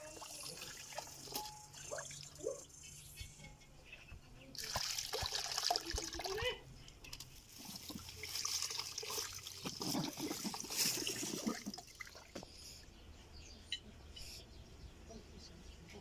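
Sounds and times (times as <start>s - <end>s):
water pouring and splashing: 0.0s - 2.6s, 4.6s - 12.4s.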